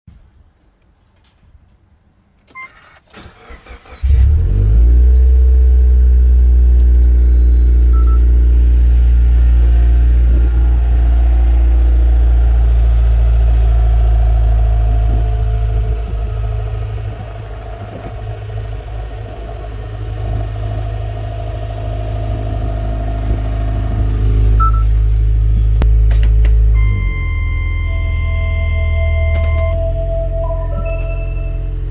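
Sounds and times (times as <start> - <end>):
car engine idling loudly: 5.6 - 31.9
short beep: 7.0 - 8.2, 26.8 - 31.9.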